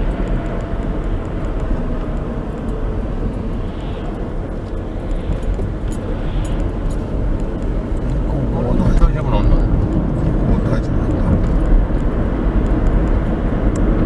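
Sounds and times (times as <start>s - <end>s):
car road and engine rumble: 0.0s - 14.0s.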